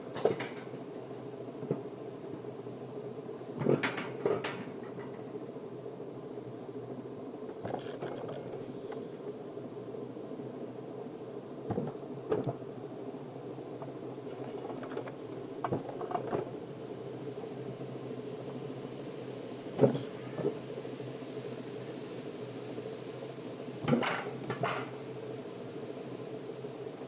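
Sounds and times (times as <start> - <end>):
steady mechanical hum: 0.0 - 27.0.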